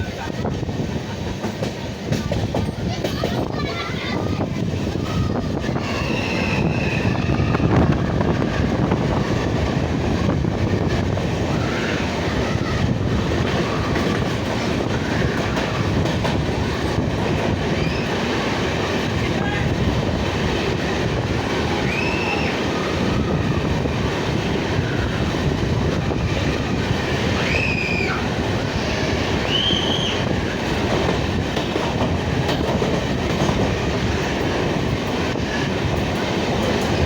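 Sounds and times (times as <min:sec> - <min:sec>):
train rumbling: 0:00.0 - 0:37.0
faint high squeals: 0:05.8 - 0:07.9, 0:27.3 - 0:30.3.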